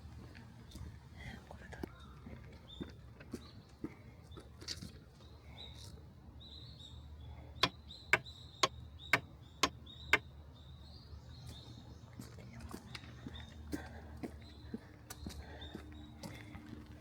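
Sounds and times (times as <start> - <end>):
small bird chirping: 5.6 - 13.6.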